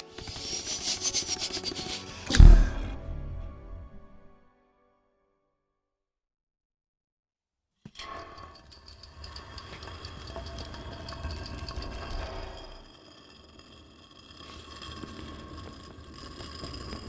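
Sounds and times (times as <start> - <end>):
sudden hit: 2.3 - 4.2
low rumble: 2.3 - 4.3.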